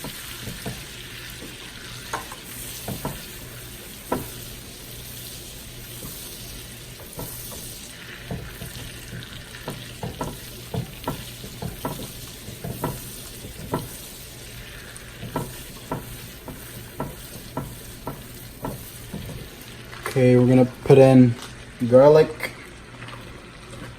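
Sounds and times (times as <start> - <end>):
utensil knocking against pan: 0.0 - 0.8, 2.1 - 3.2, 4.1 - 4.3, 8.3 - 14.0, 15.2 - 19.5
butter sizzling in a pan: 0.0 - 23.9.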